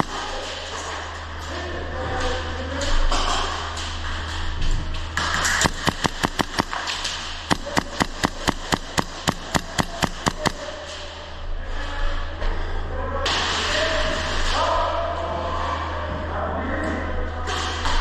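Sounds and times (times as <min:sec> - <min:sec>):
airsoft gun shots: 0:05.4 - 0:06.9, 0:07.5 - 0:10.7.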